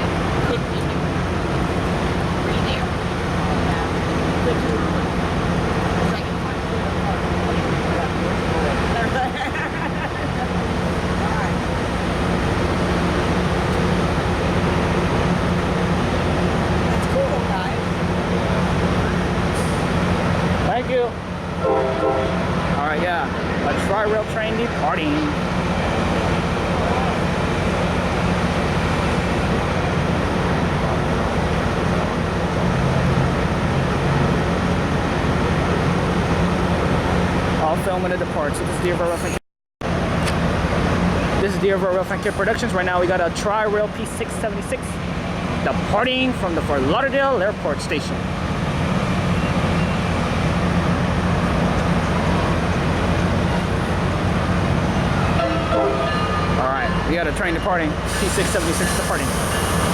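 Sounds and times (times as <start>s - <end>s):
locomotive engine idling: 0.0s - 39.3s.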